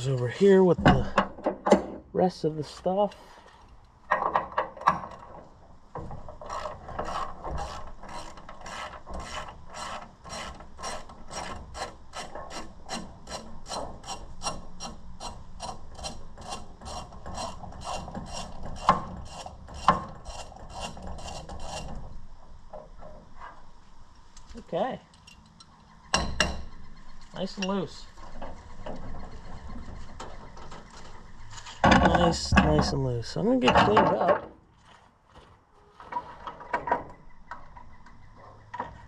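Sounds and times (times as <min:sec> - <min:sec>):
sharp metal knocks: 0:26.1 - 0:26.8.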